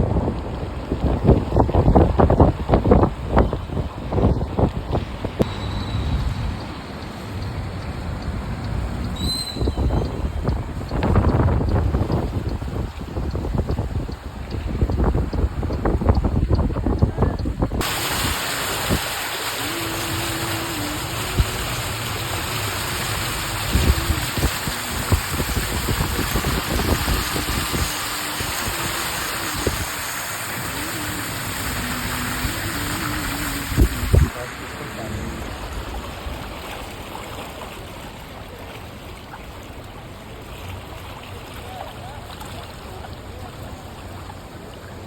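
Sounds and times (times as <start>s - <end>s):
wind gusts on microphone: 0.0s - 22.4s, 23.2s - 37.9s
floodwater rushing: 0.0s - 45.0s
heavy rain hissing: 17.8s - 36.7s.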